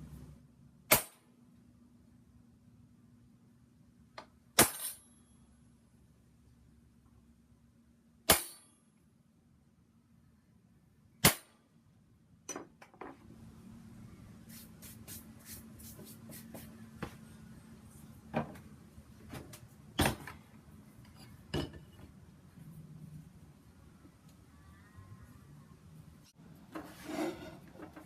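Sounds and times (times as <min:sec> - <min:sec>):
sharp metal clang: 0:04.6 - 0:05.1, 0:08.3 - 0:08.8.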